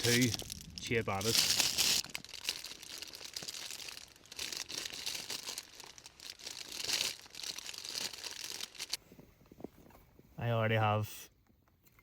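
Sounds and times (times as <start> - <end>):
plastic packaging crinkling: 0.0 - 9.0.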